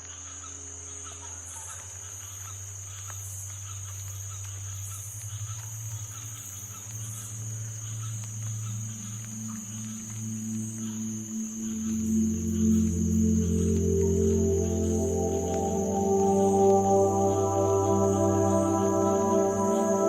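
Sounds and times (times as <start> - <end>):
crickets chirping: 0.0 - 20.0
low ambient drone: 0.1 - 20.0.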